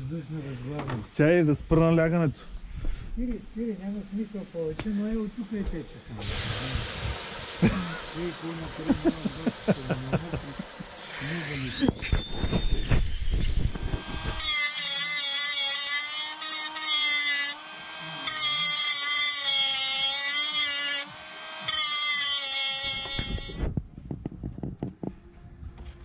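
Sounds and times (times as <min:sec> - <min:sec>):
electric power tool whine: 0:06.2 - 0:23.7.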